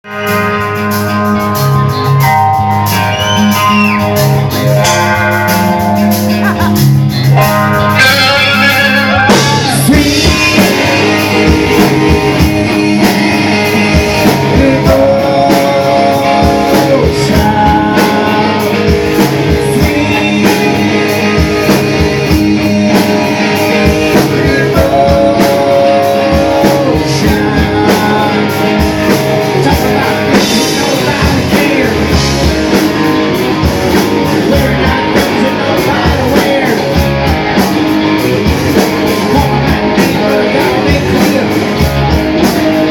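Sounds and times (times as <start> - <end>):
drum kit: 0.0 - 42.9
electric guitar: 0.0 - 42.9
person singing long notes: 7.8 - 32.4.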